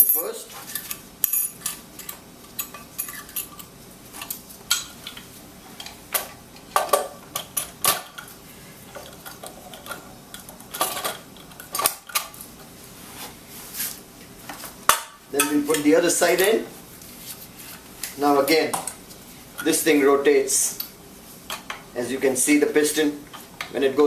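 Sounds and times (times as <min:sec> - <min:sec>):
metal parts clinking and knocking: 0:00.0 - 0:04.4.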